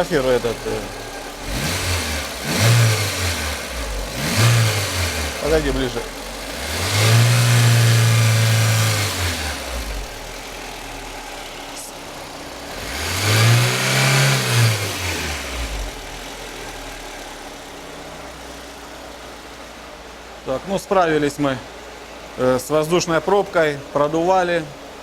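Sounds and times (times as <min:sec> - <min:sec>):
car engine revving: 0:00.0 - 0:22.9.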